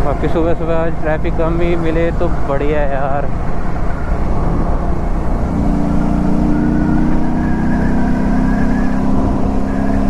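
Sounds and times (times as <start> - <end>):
motorcycle engine cruising: 0.0 - 10.0
wind rushing: 3.3 - 10.0.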